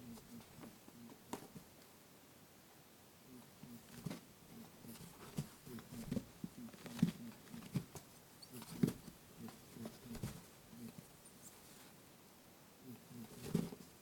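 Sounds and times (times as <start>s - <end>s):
rabbit grunting: 0.0s - 1.5s, 3.3s - 11.2s, 12.8s - 14.0s.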